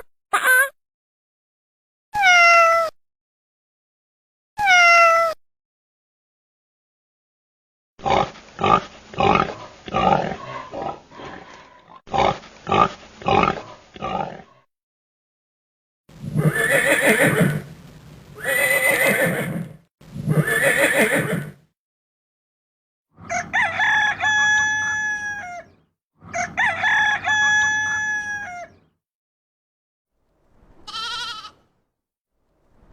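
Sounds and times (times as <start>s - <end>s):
long deep animal calls: 16.2s - 17.7s
horse whinnying: 16.3s - 17.7s, 18.4s - 21.6s.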